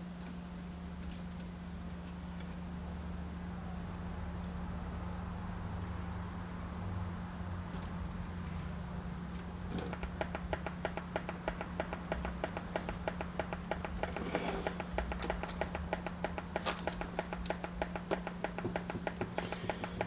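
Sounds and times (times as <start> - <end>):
steady low hum: 0.0 - 20.0
pulsating clicks: 9.9 - 20.0.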